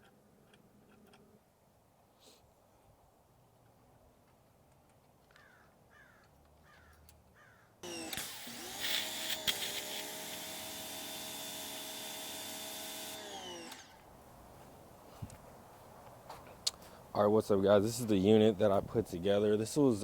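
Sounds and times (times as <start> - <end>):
electric motor whining: 7.8 - 14.0.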